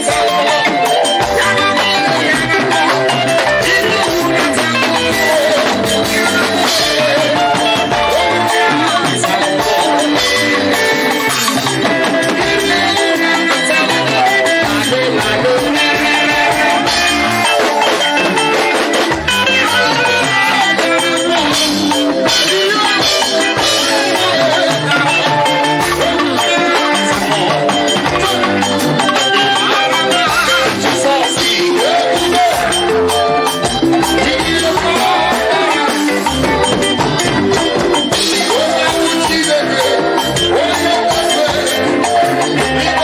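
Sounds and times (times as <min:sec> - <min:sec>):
live band music: 0:00.0 - 0:43.0
plucked guitar: 0:00.0 - 0:43.0.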